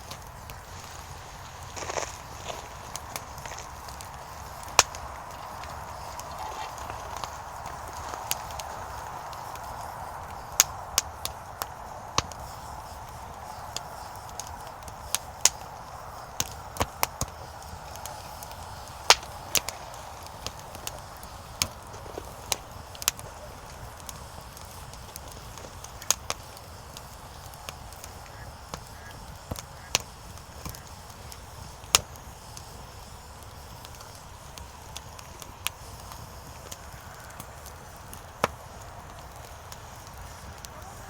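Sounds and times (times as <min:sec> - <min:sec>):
firewood crackling and popping: 0:00.0 - 0:41.0
soft hiss of flames: 0:00.0 - 0:41.0.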